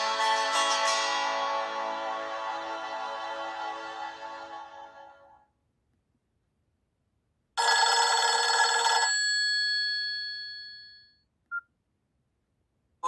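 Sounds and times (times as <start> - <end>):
bell-like phone ringtone: 7.6 - 11.2.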